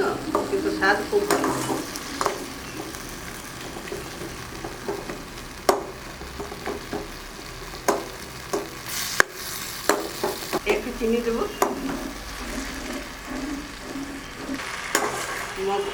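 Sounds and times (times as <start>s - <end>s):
food sizzling in a pan: 0.0s - 15.9s
spatula knocking against pan: 3.6s - 7.2s, 7.8s - 8.8s, 9.8s - 10.8s, 11.6s - 15.2s.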